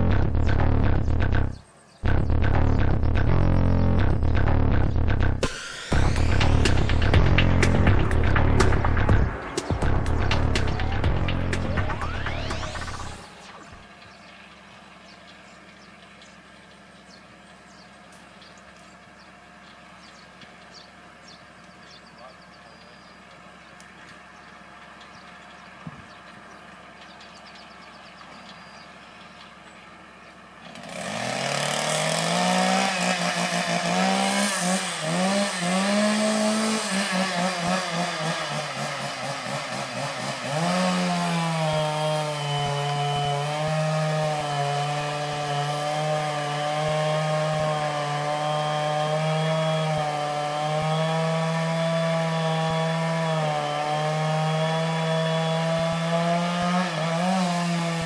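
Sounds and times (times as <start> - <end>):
chainsaw cutting wood: 2.1 - 13.8, 30.6 - 58.0.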